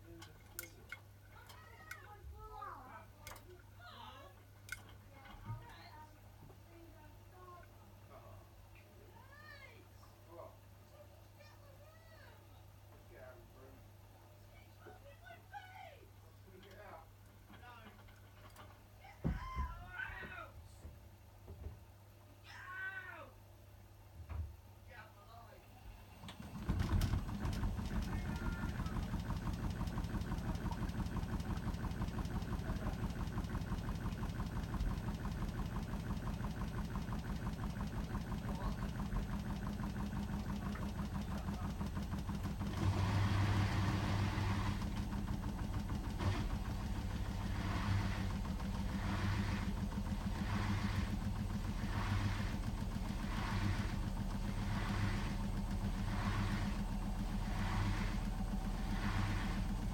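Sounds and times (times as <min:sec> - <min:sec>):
washing machine motor hum: 0:00.0 - 0:12.1, 0:25.7 - 0:59.9
drum swishing laundry: 0:26.1 - 0:59.9.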